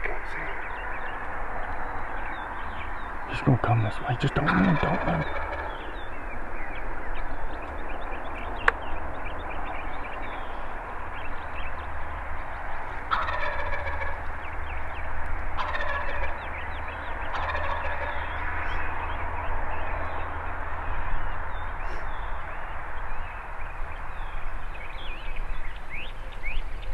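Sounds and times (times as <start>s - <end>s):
songbirds chirping: 0.0s - 26.9s
turkey gobbling: 4.1s - 5.8s, 13.1s - 14.3s, 15.6s - 16.5s, 17.3s - 18.3s.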